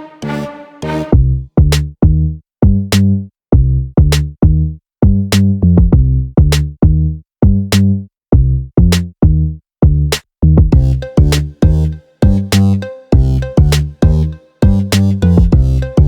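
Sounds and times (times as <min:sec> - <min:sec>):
electronic beat music: 0:00.0 - 0:01.2, 0:10.8 - 0:16.0.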